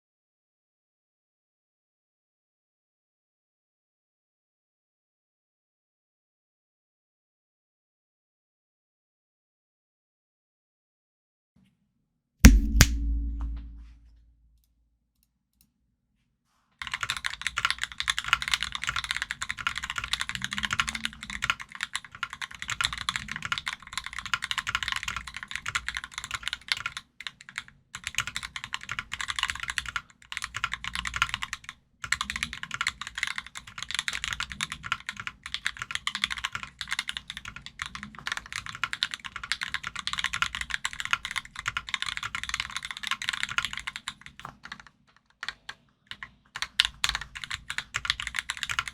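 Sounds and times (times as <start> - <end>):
fast typing on mechanical keyboard: 16.8 - 48.9.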